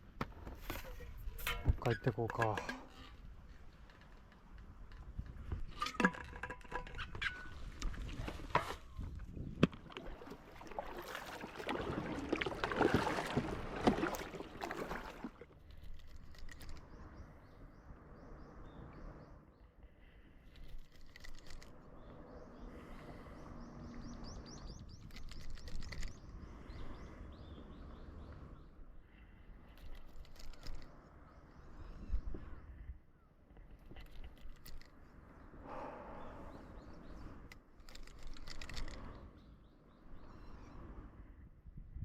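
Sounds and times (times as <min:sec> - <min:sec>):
small birds chirping: 0:20.5 - 0:28.8, 0:29.6 - 0:40.9.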